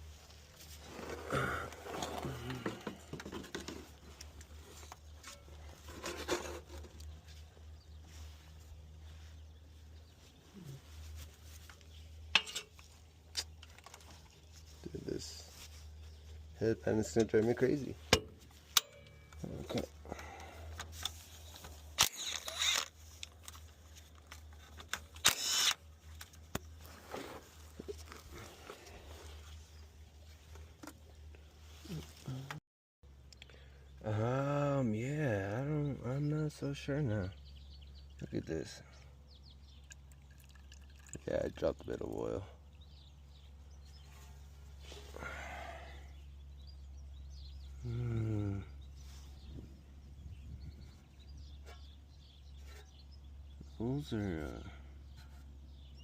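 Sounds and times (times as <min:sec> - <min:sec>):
hand tools clinking and rattling: 0:12.3 - 0:14.4
brief tool whir: 0:22.0 - 0:22.9, 0:25.2 - 0:25.8.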